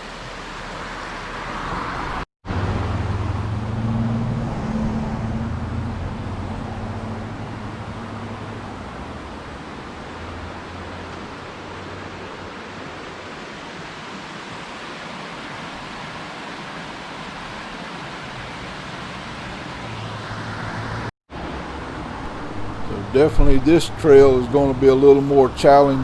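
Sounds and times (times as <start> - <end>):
steady outdoor rushing noise: 0.0 - 26.0
low rumbling: 2.5 - 11.9, 22.2 - 26.0.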